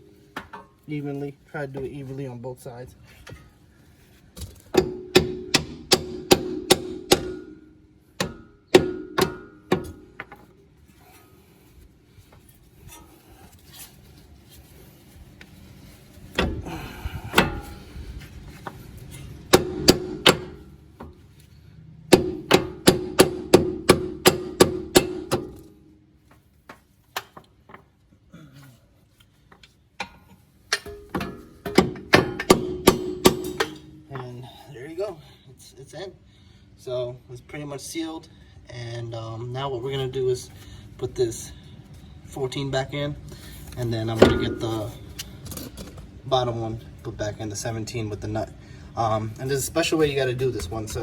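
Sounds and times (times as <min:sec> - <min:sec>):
hammer striking metal: 0:04.8 - 0:10.4, 0:19.5 - 0:20.8, 0:22.1 - 0:25.8, 0:30.7 - 0:34.2.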